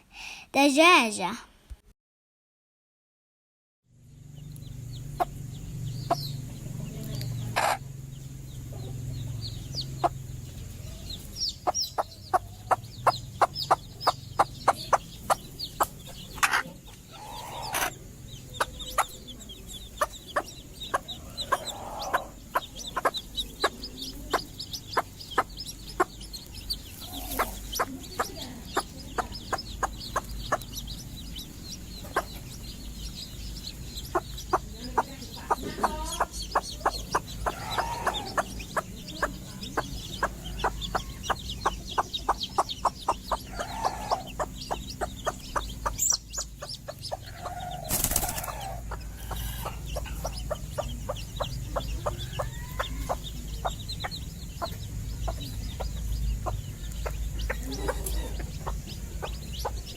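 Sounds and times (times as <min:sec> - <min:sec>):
hens clucking: 0:05.0 - 0:59.9.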